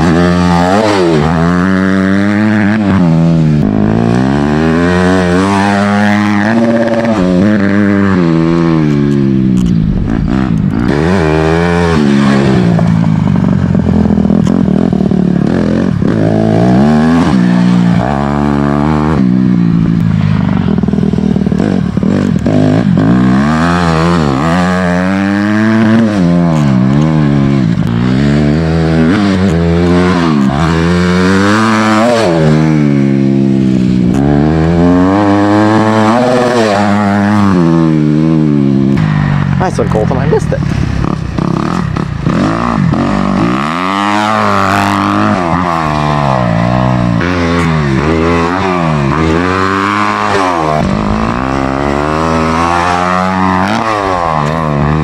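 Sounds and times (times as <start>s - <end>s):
dirt bike engine revving: 0.0s - 55.0s.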